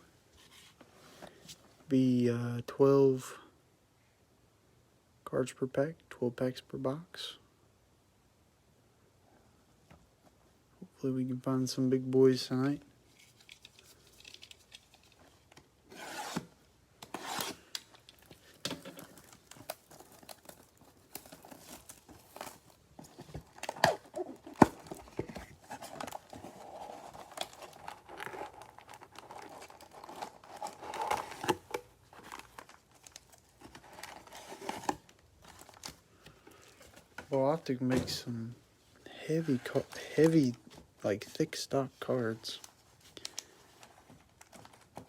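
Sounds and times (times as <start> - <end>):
plastic wrap tearing and crinkling: 17.1 - 36.0.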